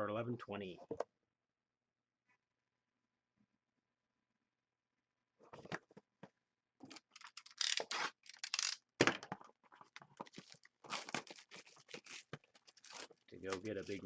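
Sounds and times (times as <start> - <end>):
packaging tearing and rustling: 6.9 - 8.8, 10.2 - 14.0.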